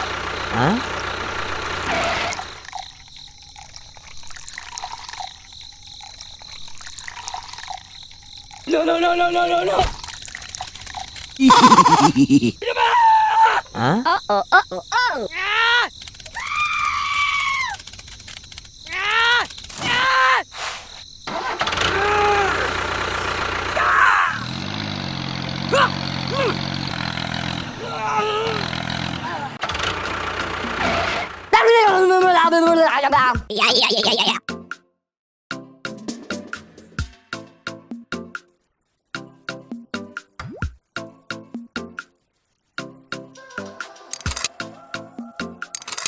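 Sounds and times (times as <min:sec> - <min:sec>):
loud engine-like noise: 0:00.0 - 0:02.7, 0:21.3 - 0:31.6
water trickling: 0:02.3 - 0:12.2
water dripping: 0:02.6 - 0:12.4.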